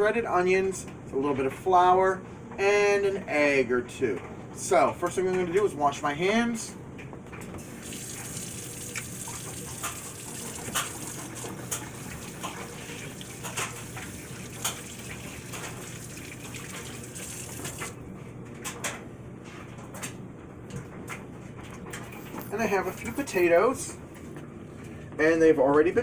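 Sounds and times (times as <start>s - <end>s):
water running from a tap: 7.6s - 18.0s
water splashes: 7.6s - 18.0s.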